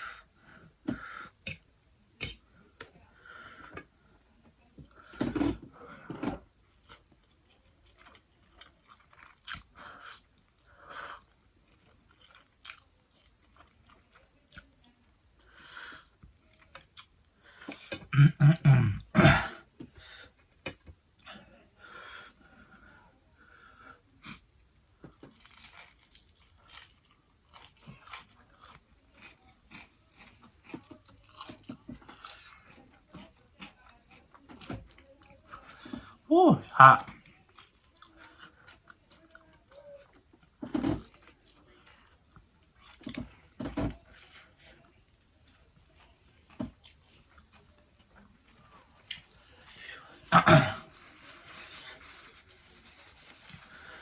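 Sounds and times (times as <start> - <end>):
person chewing crunchy food: 6.7 - 14.8, 24.2 - 36.1, 36.9 - 44.4.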